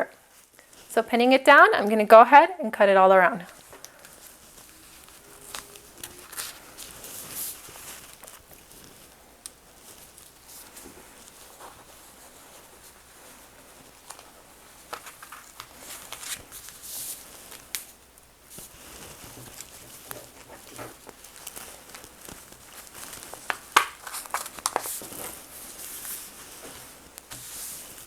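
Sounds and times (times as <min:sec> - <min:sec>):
fabric rustling: 0:00.0 - 0:01.1, 0:03.4 - 0:28.0
shears snipping fabric: 0:03.5 - 0:17.9.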